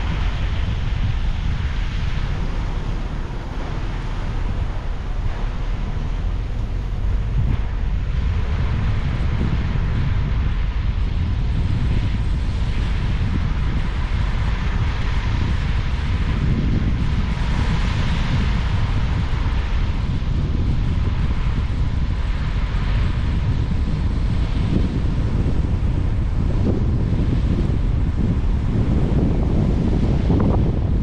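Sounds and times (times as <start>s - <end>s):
wind buffeting microphone: 0.0s - 31.0s.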